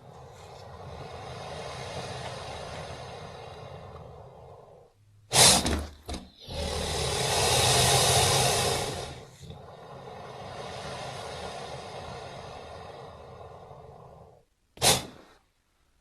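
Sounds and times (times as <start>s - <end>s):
creature breathy hiss: 0.0s - 15.4s
long breathy exhale: 0.0s - 15.4s
short sharp snort: 5.3s - 9.7s, 14.8s - 15.5s.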